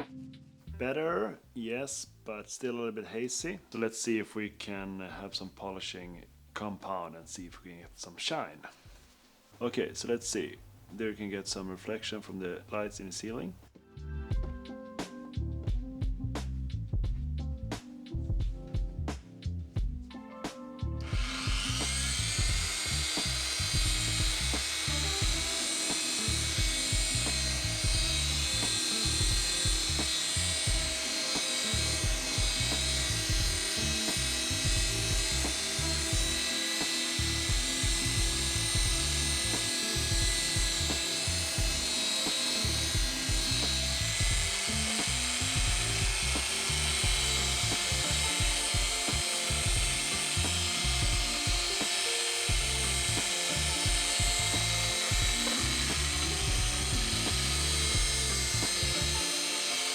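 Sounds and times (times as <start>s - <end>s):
background music with steady beat: 0.0s - 2.2s, 12.4s - 59.9s
electric polishing machine running: 21.0s - 59.9s.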